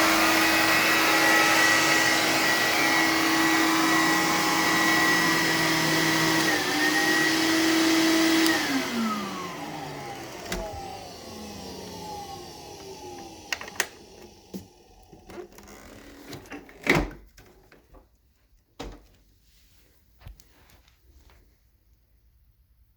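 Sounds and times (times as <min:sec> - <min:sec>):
motor winding down: 0:00.0 - 0:14.4
vacuum cleaner running: 0:00.0 - 0:16.3.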